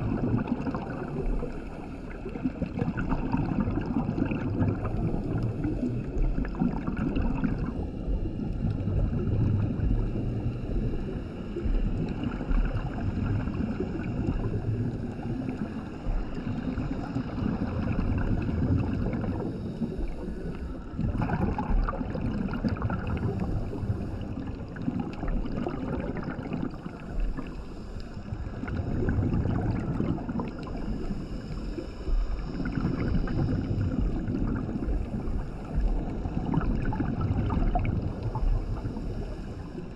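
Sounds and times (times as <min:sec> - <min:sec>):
bubbles gurgling underwater: 0:00.0 - 0:39.9
diver regulator breathing: 0:04.5 - 0:08.3, 0:13.5 - 0:21.9, 0:22.7 - 0:36.5, 0:38.0 - 0:39.9.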